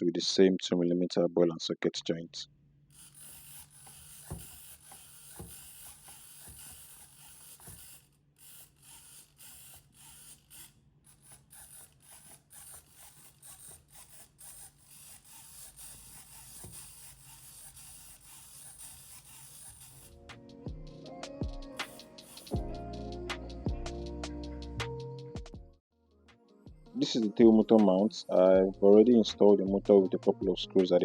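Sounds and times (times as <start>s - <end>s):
small parts clicking: 2.9s - 20.2s, 21.8s - 22.6s.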